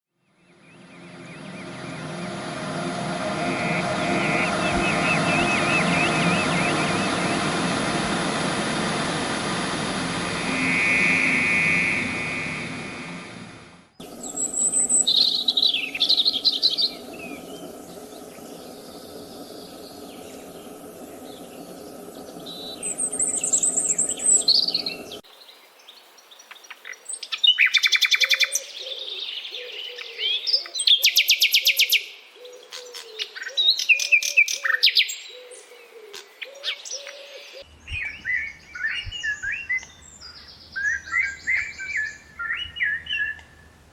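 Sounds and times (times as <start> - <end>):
steady hum: 0.2 - 25.2
dense steady din: 0.5 - 25.2
repeated low note: 0.5 - 25.2
birds whistling: 3.4 - 7.8, 14.0 - 25.2.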